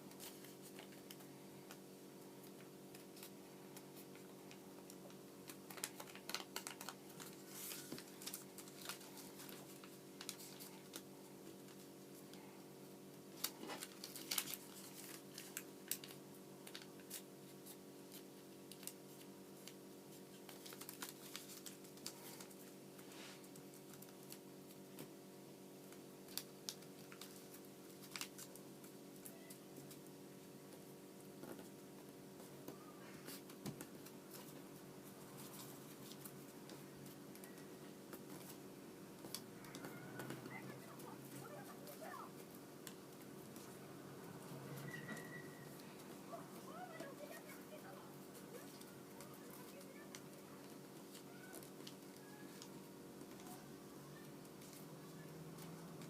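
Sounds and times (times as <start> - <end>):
faint steady hum: 0.0 - 56.0
paper being folded by hand: 0.0 - 56.0.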